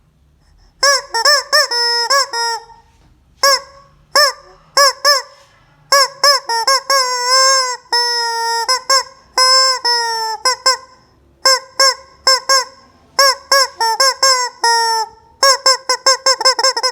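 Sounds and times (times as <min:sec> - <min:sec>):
rubber chicken toy squawking: 0:00.8 - 0:16.9.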